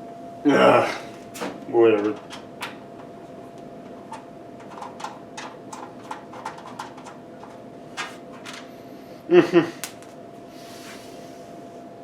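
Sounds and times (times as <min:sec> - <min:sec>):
faint steady hum: 0:00.0 - 0:12.0
computer parts clicking and tapping: 0:01.4 - 0:08.7.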